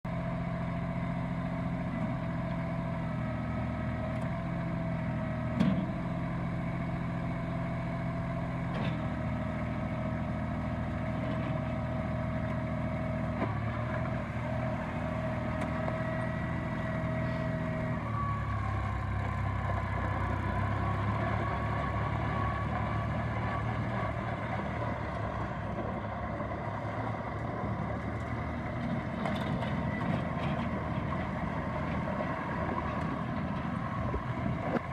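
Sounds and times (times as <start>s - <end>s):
tractor diesel engine running: 0.0s - 34.9s.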